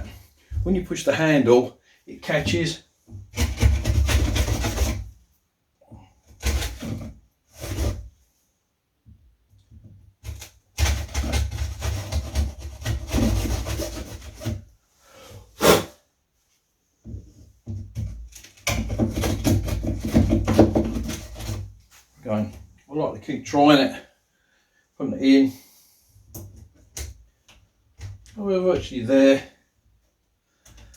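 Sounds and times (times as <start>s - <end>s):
wood being scraped by hand: 3.3s - 5.1s, 6.4s - 8.1s, 10.3s - 14.7s, 15.6s - 16.0s, 18.7s - 21.8s.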